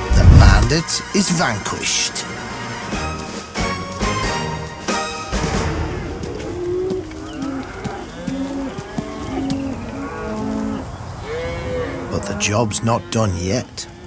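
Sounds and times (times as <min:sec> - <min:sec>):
cattle mooing: 0:01.7 - 0:03.3, 0:05.8 - 0:14.0.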